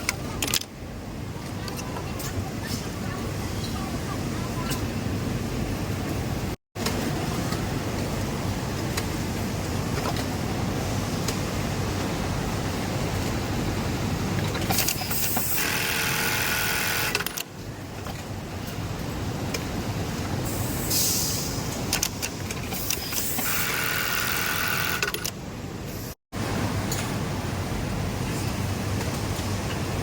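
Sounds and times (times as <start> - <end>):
industrial sewing machines running: 14.7 - 17.4, 23.4 - 25.3.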